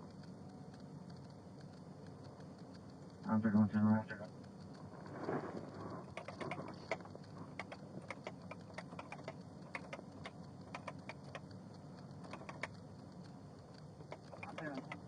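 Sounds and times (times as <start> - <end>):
keyboard typing clicks: 6.0 - 15.0.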